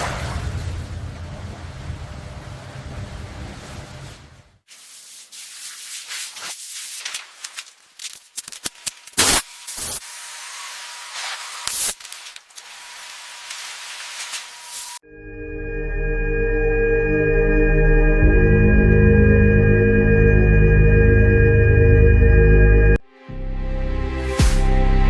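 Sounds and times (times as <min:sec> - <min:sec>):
spraying hissing bursts: 0:04.7 - 0:07.5, 0:09.1 - 0:15.0.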